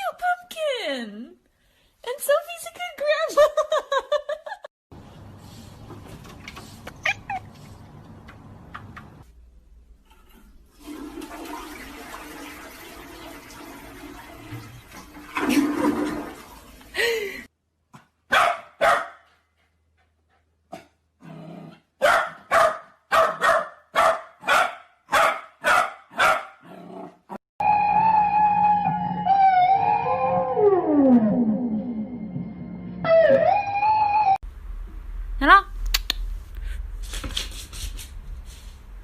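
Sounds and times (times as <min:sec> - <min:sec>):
dog barking: 0:18.3 - 0:19.3, 0:22.0 - 0:26.6.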